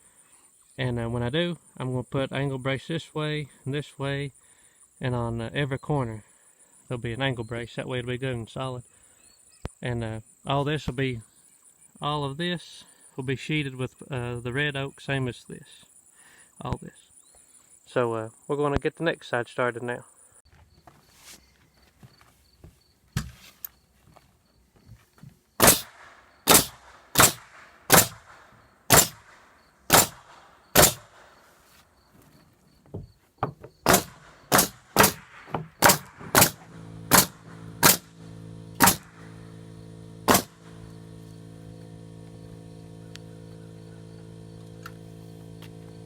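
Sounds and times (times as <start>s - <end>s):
hammer driving nails into wood: 25.6s - 31.4s, 33.4s - 41.1s
steady low hum: 33.9s - 46.0s.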